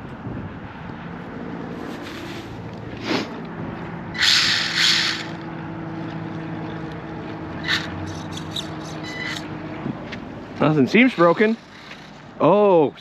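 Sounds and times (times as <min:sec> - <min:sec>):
plastic tyres scrubbing on concrete: 0:01.8 - 0:03.3
small electric motor whining: 0:04.2 - 0:05.5, 0:07.6 - 0:09.5.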